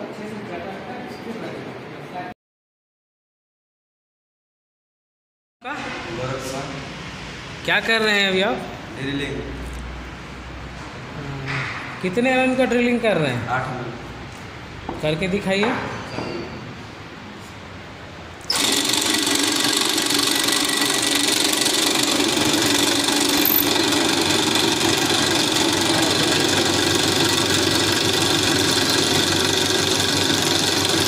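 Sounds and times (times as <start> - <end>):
electric drill running: 18.4 - 31.0.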